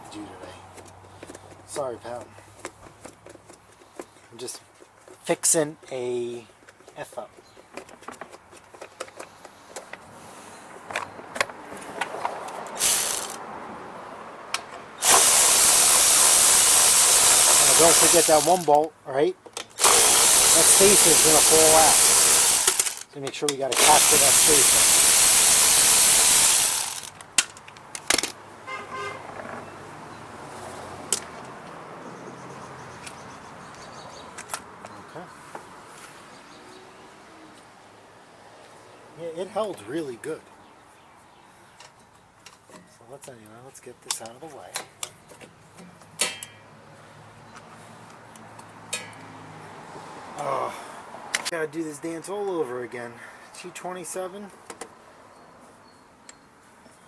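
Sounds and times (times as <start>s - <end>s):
tools tapping on engine parts: 0.7s - 5.3s, 6.6s - 10.0s, 14.5s - 28.4s, 44.1s - 46.6s, 47.5s - 49.3s
metal parts clicking and knocking: 12.8s - 13.4s, 15.0s - 18.8s, 19.6s - 23.1s, 23.7s - 28.4s
power tool hissing: 12.8s - 13.4s, 15.0s - 18.7s, 19.8s - 23.0s, 23.7s - 27.1s.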